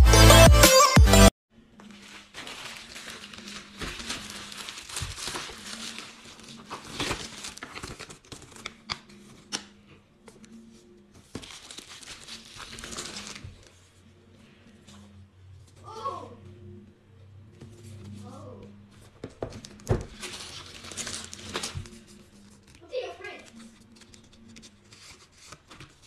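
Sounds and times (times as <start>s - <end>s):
packaging tearing and crinkling: 1.9s - 8.8s, 11.4s - 13.7s, 20.2s - 22.0s.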